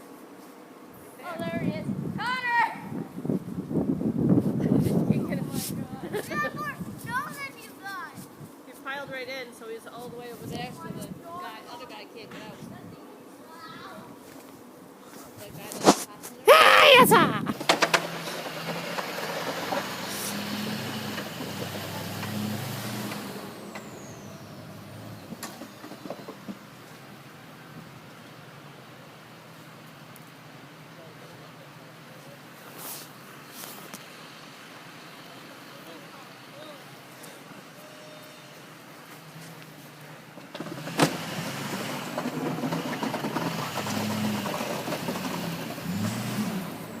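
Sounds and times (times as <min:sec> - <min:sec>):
passing vehicle engine hum: 0:17.8 - 0:26.7, 0:40.7 - 0:47.0.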